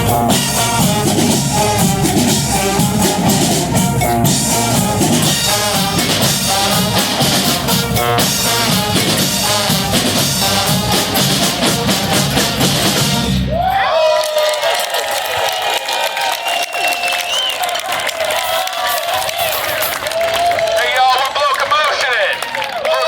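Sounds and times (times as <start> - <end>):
snare and bass drum beat: 0.0 - 13.3
brass band horns: 0.0 - 13.6.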